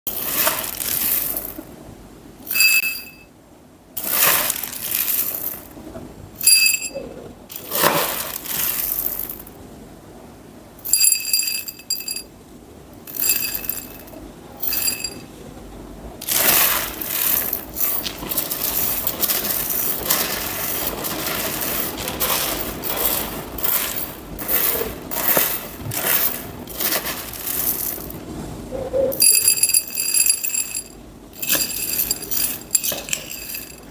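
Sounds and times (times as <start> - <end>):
dried beans pouring and rattling: 0.1 - 1.7, 4.0 - 5.8, 7.5 - 9.5, 13.1 - 15.2, 16.2 - 28.2, 29.2 - 33.9
container ringing: 2.5 - 3.3, 6.4 - 9.4, 10.8 - 12.3, 13.1 - 15.3, 16.2 - 28.2, 29.2 - 33.9.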